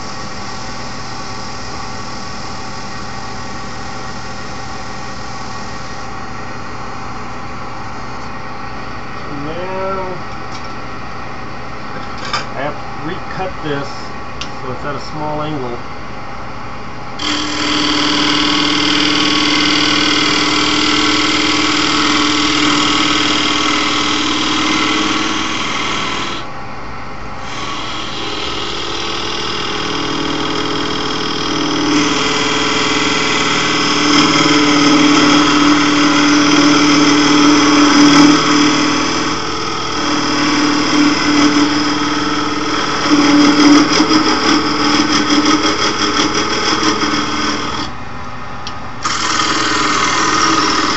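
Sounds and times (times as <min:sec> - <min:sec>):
wood lathe motor hum: 0:00.0 - 0:08.1, 0:17.2 - 0:26.5, 0:27.4 - 0:48.0, 0:49.0 - 0:50.9
turning tool scraping wood: 0:17.2 - 0:26.5, 0:27.4 - 0:47.9, 0:49.0 - 0:50.9.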